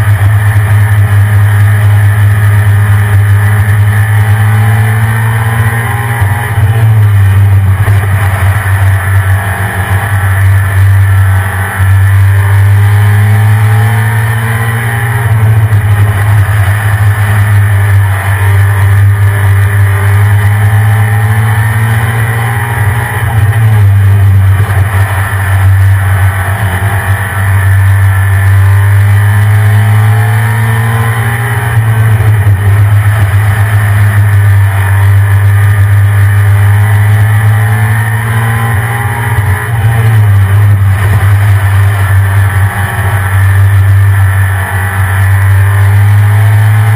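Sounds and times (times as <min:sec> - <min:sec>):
pickup truck engine running: 0:06.2 - 0:14.2, 0:22.6 - 0:30.5, 0:39.3 - 0:46.9.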